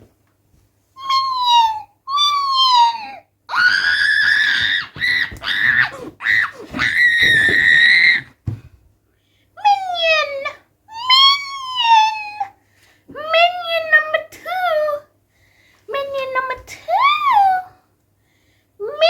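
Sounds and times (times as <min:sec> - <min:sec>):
child screaming: 0:01.0 - 0:08.3.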